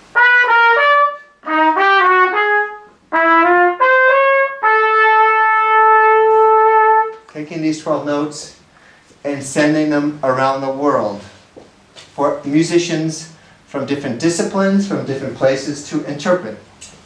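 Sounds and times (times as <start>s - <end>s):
trumpet playing: 0.0s - 7.3s.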